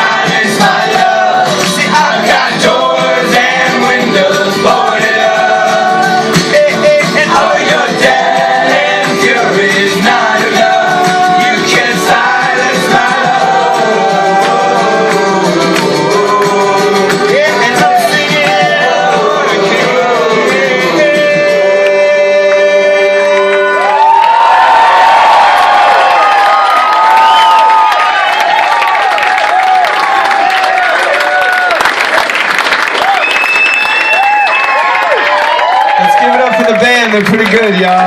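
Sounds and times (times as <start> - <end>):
live band playing: 0.0 - 22.4
person singing: 0.0 - 24.3.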